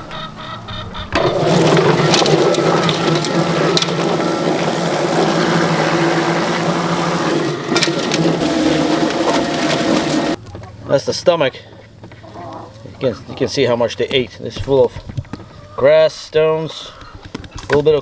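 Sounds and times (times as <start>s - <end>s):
bird churning in plucker drum: 1.1s - 10.4s
motor hum: 1.1s - 10.4s.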